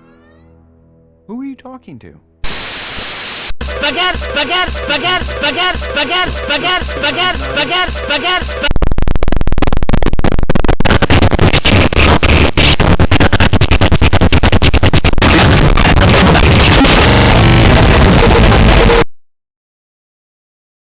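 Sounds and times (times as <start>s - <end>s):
harsh buzz: 2.4s - 19.1s
distorted stuttering music and noise: 3.6s - 19.1s.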